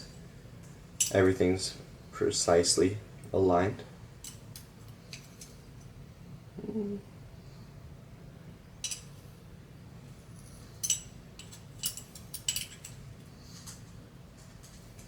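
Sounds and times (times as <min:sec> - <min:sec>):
small metal parts clicking: 0:10.8 - 0:13.0.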